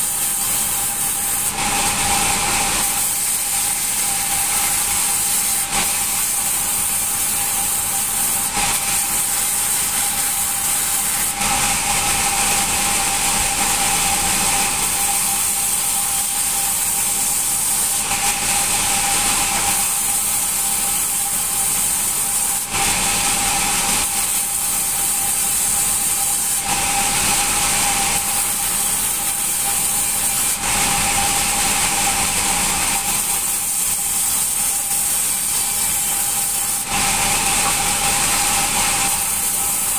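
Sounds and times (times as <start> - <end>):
band saw cutting wood: 0.0 - 39.9.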